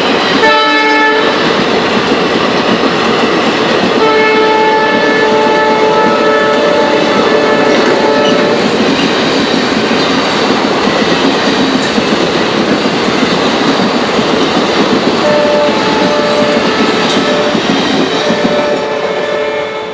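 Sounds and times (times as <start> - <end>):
train wheels clattering on track: 0.0 - 19.9
locomotive horn blasts: 0.4 - 1.3, 4.0 - 8.6, 15.2 - 17.6, 18.2 - 19.9.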